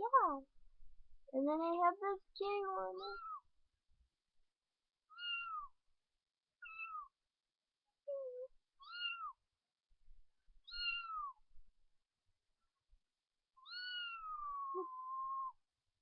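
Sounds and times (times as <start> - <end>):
cat meow ringtone: 2.9 - 3.4, 5.1 - 5.7, 10.7 - 11.4, 13.6 - 15.5.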